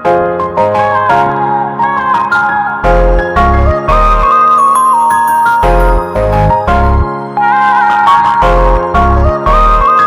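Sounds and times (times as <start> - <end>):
gentle mallet melody with bass: 3.1 - 7.6.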